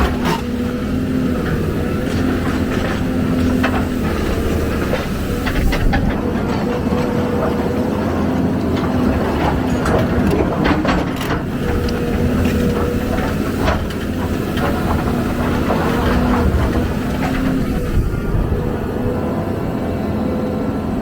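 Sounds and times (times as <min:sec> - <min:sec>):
diesel excavator engine running: 0:00.0 - 0:21.0
metallic clanks and knocks: 0:08.7 - 0:18.0.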